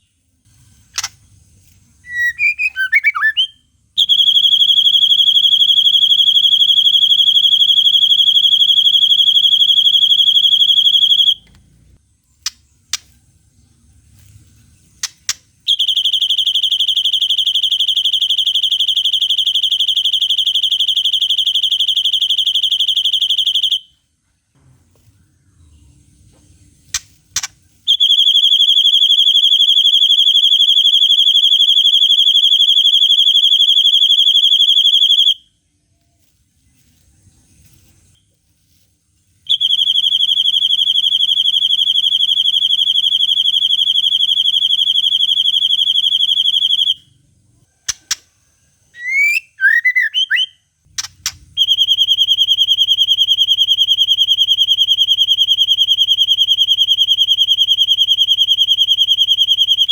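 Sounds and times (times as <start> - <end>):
short sharp bird chips: 0.5 - 3.6, 49.0 - 51.5
bird high fast trill: 0.8 - 1.2, 2.0 - 11.4, 49.0 - 59.9.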